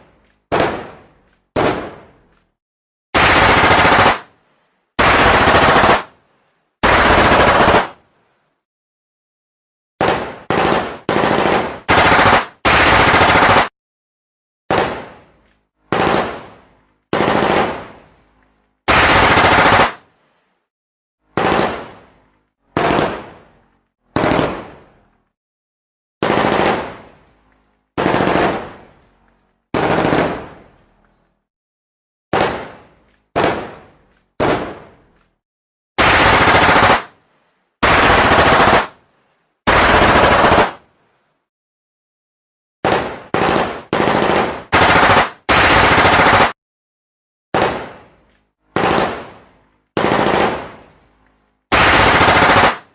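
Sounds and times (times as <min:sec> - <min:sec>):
automatic gunfire bursts: 0:03.2 - 0:04.3, 0:05.0 - 0:06.1, 0:06.8 - 0:08.0, 0:10.0 - 0:13.7, 0:15.9 - 0:16.4, 0:17.1 - 0:17.8, 0:18.9 - 0:20.0, 0:21.4 - 0:21.8, 0:24.2 - 0:24.6, 0:26.2 - 0:27.0, 0:28.0 - 0:28.8, 0:29.8 - 0:30.5, 0:36.0 - 0:37.1, 0:37.8 - 0:39.0, 0:39.7 - 0:40.8, 0:42.8 - 0:46.6, 0:48.8 - 0:49.3, 0:50.0 - 0:50.8, 0:51.7 - 0:52.9.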